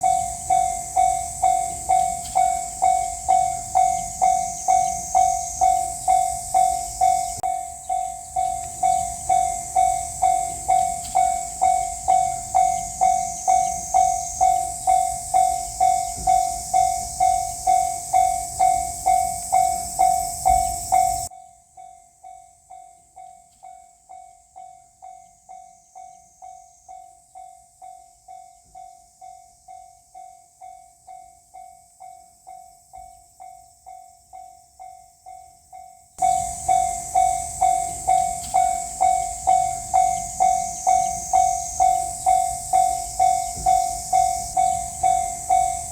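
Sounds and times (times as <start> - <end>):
passing train rumble and hiss: 0.0 - 21.3, 36.2 - 45.9
crossing warning bell ringing: 0.0 - 45.9.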